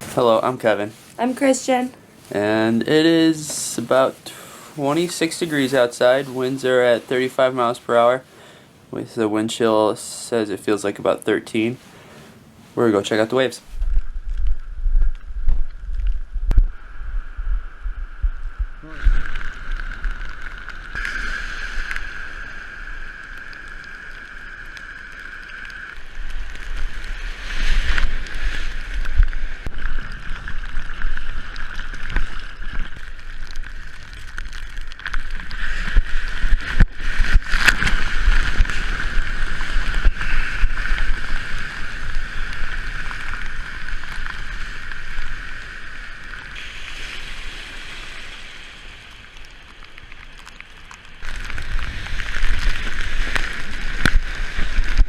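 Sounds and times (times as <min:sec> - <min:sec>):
water sloshing and waves breaking: 0:00.0 - 0:08.9, 0:19.2 - 0:55.0
steady high-pitched tone: 0:20.8 - 0:30.5.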